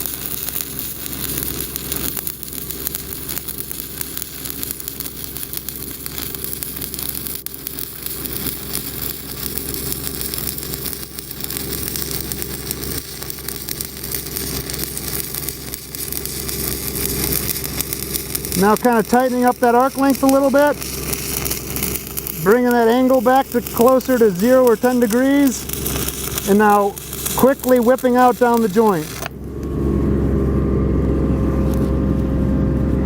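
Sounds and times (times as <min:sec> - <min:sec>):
crackling welding arc: 0:00.0 - 0:29.4
engine hum: 0:14.6 - 0:33.0.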